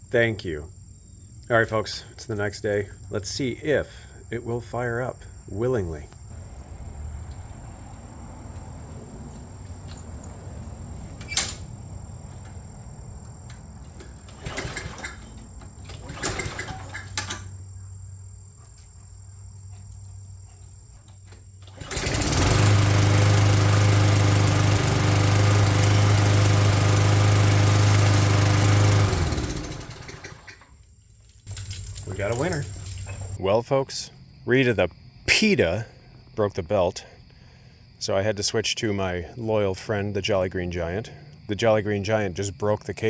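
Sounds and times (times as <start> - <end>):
lawn mower engine running: 6.3 - 17.6, 21.6 - 30.7, 31.5 - 33.4.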